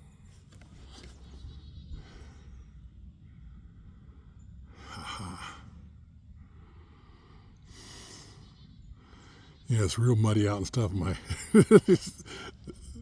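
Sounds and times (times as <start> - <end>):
faint low rumble: 0.0 - 13.0
man breathing out heavily: 6.4 - 9.6.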